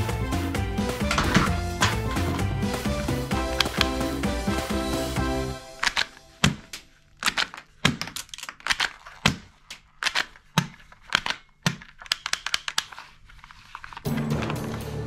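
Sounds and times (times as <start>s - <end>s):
toy gun plastic clicks: 5.7s - 14.1s.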